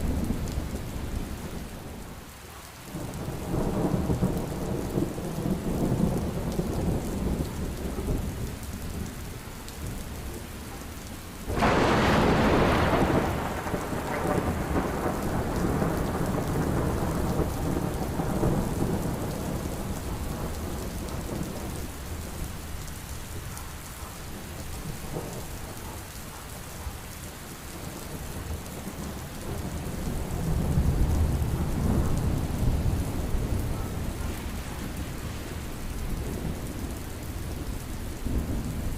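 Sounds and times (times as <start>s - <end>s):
heavy rain: 0.0s - 38.9s
thunder: 3.0s - 8.4s, 11.5s - 21.9s, 27.8s - 38.9s.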